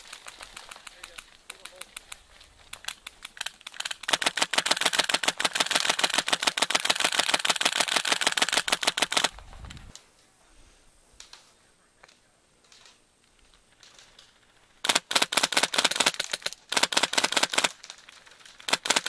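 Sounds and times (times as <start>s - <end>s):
airsoft rifle firing: 3.4s - 9.4s, 14.8s - 17.8s, 18.6s - 19.0s.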